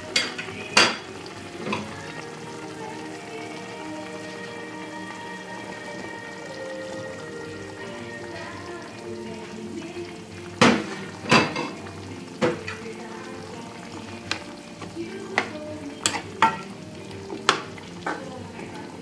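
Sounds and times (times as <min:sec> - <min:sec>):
food sizzling: 0:00.0 - 0:19.0
utensil stirring in a pan: 0:00.0 - 0:19.0.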